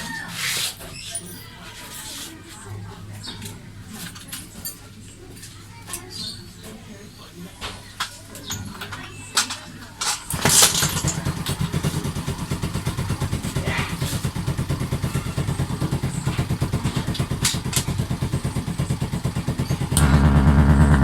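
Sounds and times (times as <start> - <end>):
motorcycle engine starting and idling: 10.3 - 21.0.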